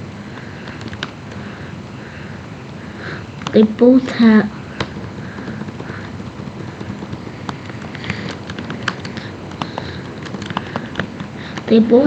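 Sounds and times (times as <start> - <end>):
low room background: 0.0 - 12.0
light clicks and taps: 2.6 - 11.8.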